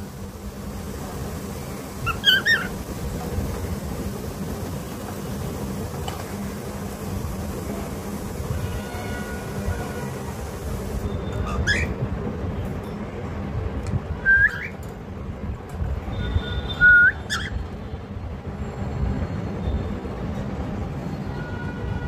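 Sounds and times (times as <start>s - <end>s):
cockatiel whistling: 2.0s - 2.7s, 11.4s - 11.9s, 14.2s - 14.8s, 16.8s - 17.6s.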